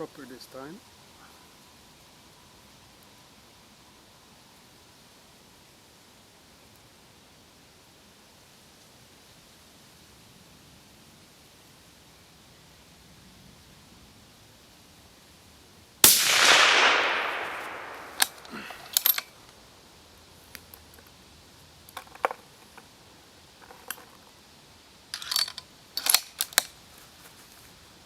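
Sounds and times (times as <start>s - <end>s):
suppressed rifle shot: 16.0s - 19.2s.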